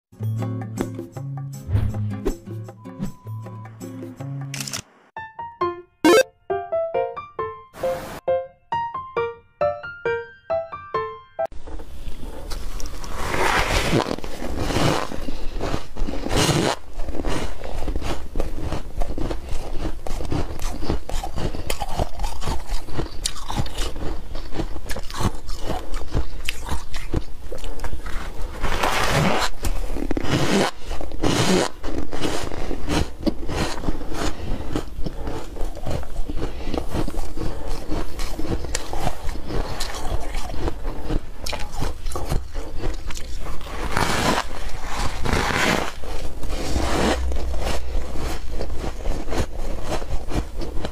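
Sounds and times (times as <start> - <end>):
ice being chewed: 11.9 - 50.9.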